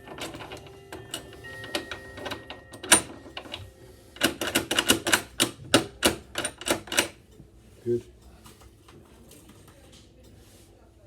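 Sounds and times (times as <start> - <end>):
door lock clicking: 4.2 - 7.2.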